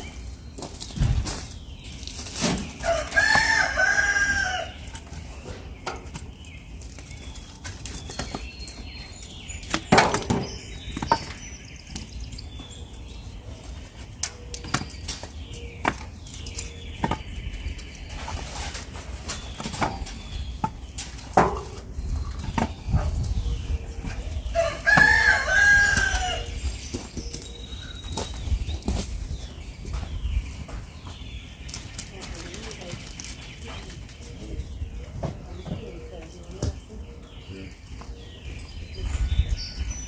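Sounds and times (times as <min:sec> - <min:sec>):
rooster crowing: 0:02.9 - 0:04.7, 0:24.5 - 0:26.5.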